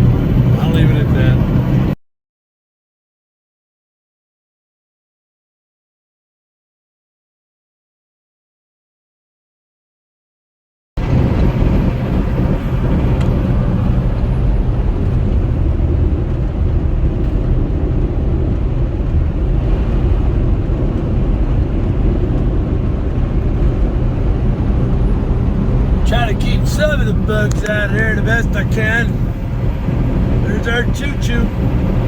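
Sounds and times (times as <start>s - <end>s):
road noise: 0.0s - 2.0s, 11.0s - 32.0s
truck diesel engine running: 0.0s - 2.0s, 11.0s - 32.0s.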